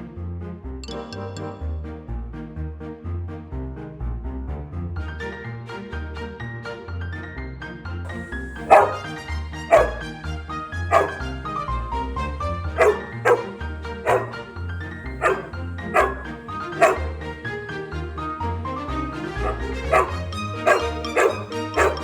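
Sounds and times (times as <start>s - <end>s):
dog barking: 8.1s - 11.8s, 12.7s - 17.2s, 19.2s - 22.0s.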